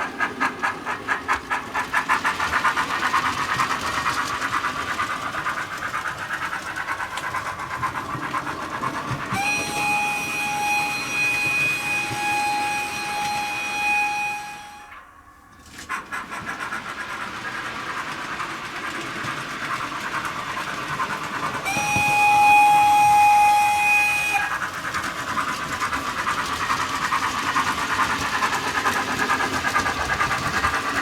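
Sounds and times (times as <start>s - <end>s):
model train chuffing: 0.0s - 31.0s
model train steam whistle: 9.0s - 16.7s, 19.7s - 31.0s.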